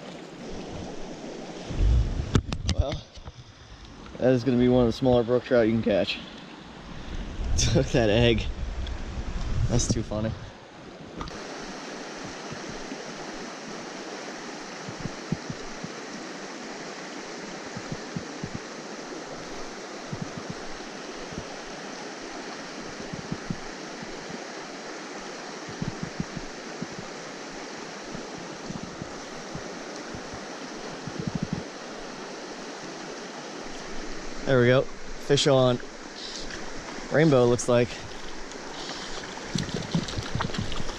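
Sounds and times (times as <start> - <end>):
stream water rushing: 0.0 - 40.9
short low thumps: 1.7 - 2.6.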